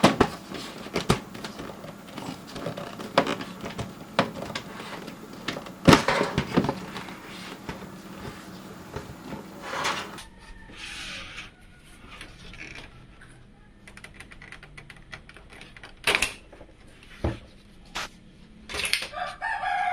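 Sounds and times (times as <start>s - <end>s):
computer case clicks and knocks: 0.0s - 1.8s, 2.5s - 7.9s.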